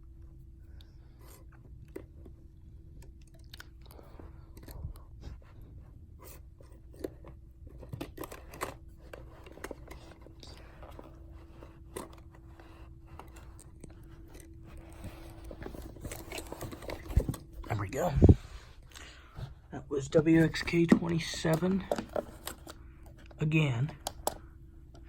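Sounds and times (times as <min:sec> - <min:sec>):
faint steady hum: 0:00.0 - 0:25.0
radio handling clicks and rustles: 0:06.2 - 0:25.0.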